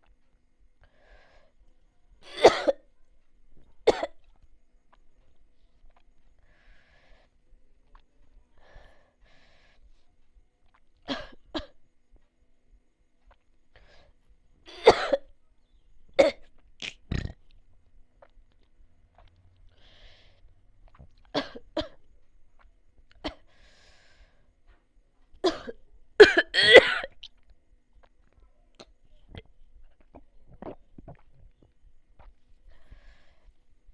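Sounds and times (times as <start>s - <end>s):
person coughing: 25.5s - 27.1s.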